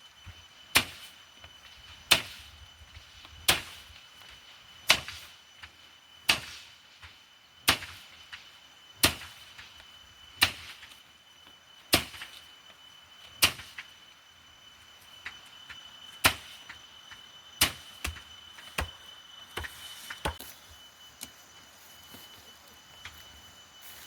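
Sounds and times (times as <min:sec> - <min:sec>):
faint high-pitched tone: 0:18.6 - 0:24.0.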